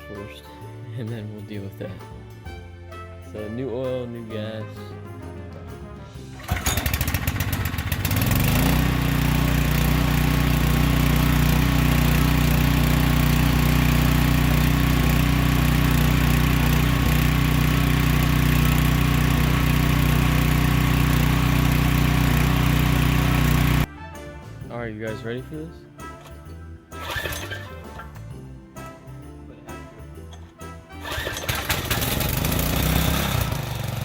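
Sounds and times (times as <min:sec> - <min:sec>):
generator engine running: 0:06.2 - 0:23.9, 0:27.0 - 0:28.5, 0:30.4 - 0:34.0.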